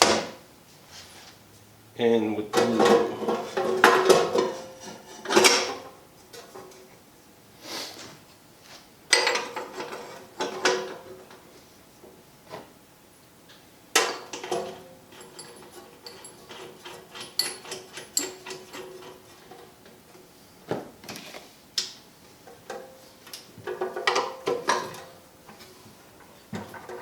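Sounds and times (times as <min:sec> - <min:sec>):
hand tools clicking and clunking: 0:02.5 - 0:06.9, 0:09.1 - 0:11.4, 0:14.0 - 0:20.2, 0:22.4 - 0:27.0.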